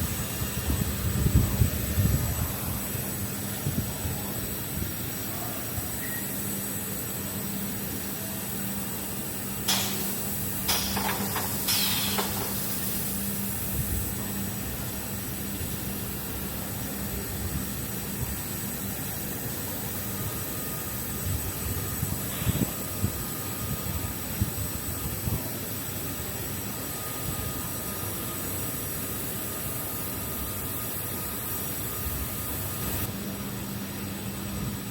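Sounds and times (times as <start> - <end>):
sharp clacks or hisses: 10.7 - 12.9.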